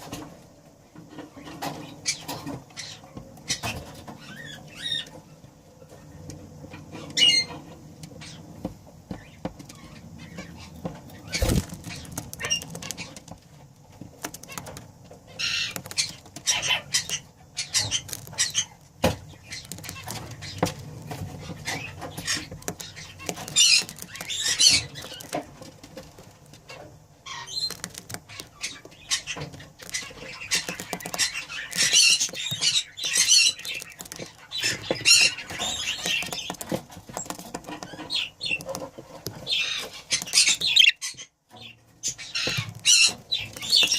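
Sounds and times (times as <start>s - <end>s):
budgerigars chattering: 39.4s - 43.9s.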